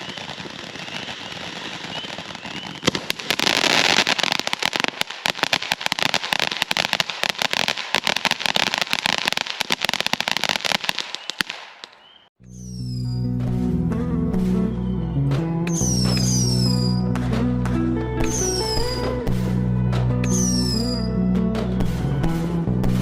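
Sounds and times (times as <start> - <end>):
firework fountain crackling and hissing: 0.0 - 12.0
music: 12.4 - 23.0.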